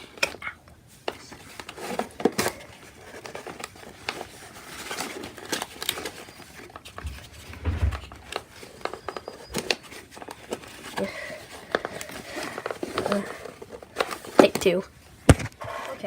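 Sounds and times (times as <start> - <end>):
packaging rustling and scraping: 1.3 - 15.5
dull bumps: 7.0 - 8.4.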